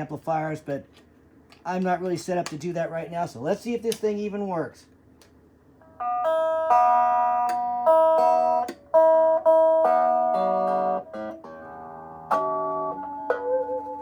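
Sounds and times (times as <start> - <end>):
electric guitar notes and chords: 5.8 - 14.0.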